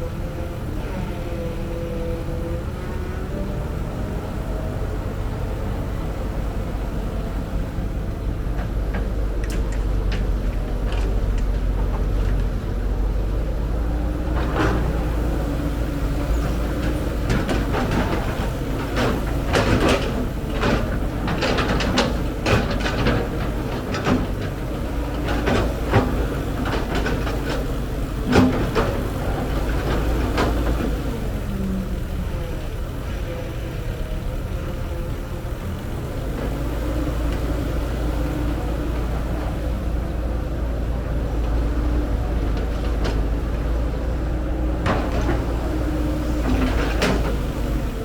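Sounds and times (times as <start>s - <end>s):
excavator diesel engine running: 0.0s - 48.0s.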